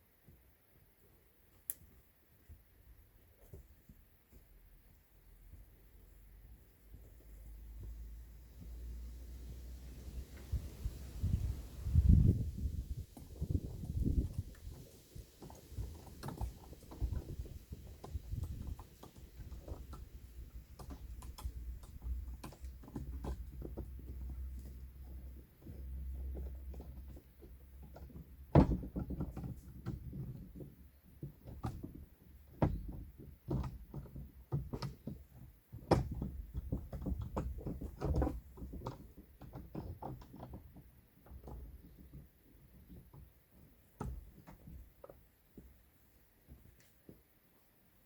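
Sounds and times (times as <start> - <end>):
knocks and clicks of fence work: 15.4 - 45.8.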